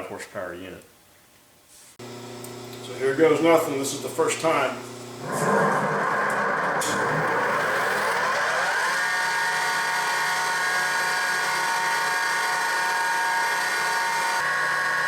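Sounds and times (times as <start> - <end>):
planer motor whining: 4.8 - 15.0.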